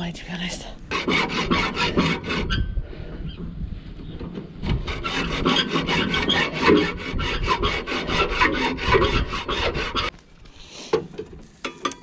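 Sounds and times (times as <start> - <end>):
metal scraping on metal: 0.9 - 2.8, 4.8 - 10.1.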